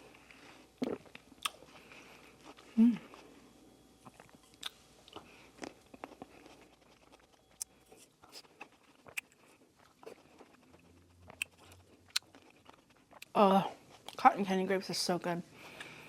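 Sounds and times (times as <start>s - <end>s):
chewing fruit mouth clicks: 0.8s - 1.8s, 4.0s - 14.2s.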